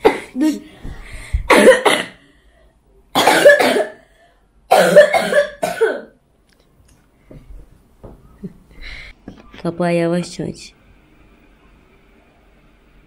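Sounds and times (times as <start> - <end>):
person coughing: 0.0 - 0.6, 1.5 - 2.2, 3.2 - 4.0, 4.7 - 6.2.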